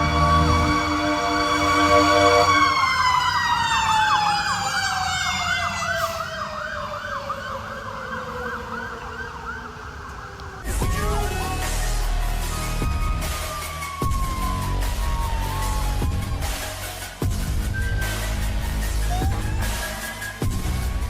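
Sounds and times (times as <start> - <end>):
truck air horns: 0.0 - 3.6, 17.8 - 21.0
mechanical siren winding down: 0.0 - 16.8, 18.5 - 20.8
electronic siren yelping: 18.6 - 20.5.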